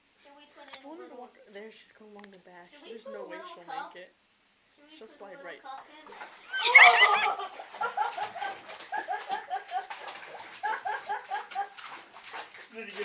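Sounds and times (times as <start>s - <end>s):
people laughing: 6.6s - 11.9s.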